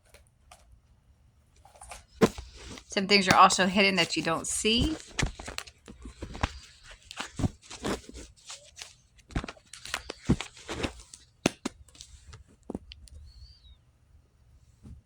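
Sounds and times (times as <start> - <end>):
handling scrapes and taps: 1.6 - 13.2.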